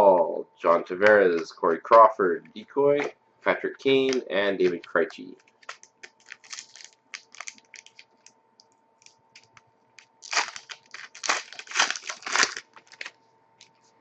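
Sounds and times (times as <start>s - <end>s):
cards clicking: 4.0s - 8.1s
wrapper crinkling and tearing: 5.6s - 8.3s, 10.2s - 13.2s.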